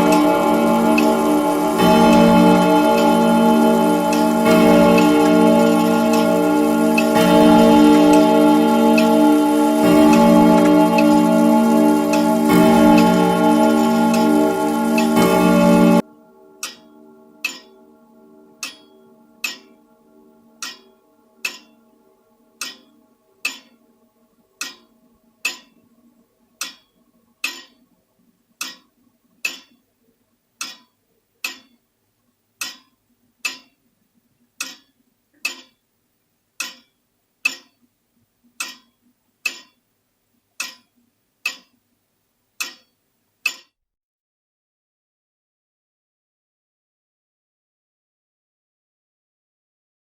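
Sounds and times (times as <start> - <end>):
grandfather clock ticking: 0.0 - 16.0, 16.6 - 21.9, 22.5 - 23.8, 24.6 - 25.8, 26.6 - 27.8, 28.6 - 29.8, 30.6 - 31.8, 32.6 - 33.8, 34.6 - 35.8, 36.6 - 37.8, 38.6 - 39.8, 40.6 - 41.8, 42.6 - 42.9
lingering ringing: 0.0 - 20.5.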